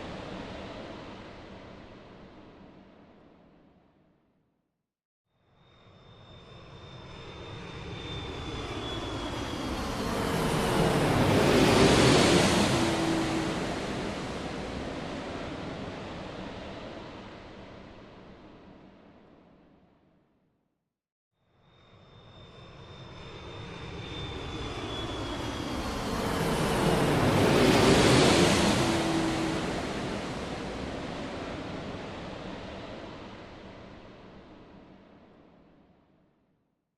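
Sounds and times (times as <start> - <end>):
airplane flying over: 5.8 - 18.8, 21.7 - 35.4.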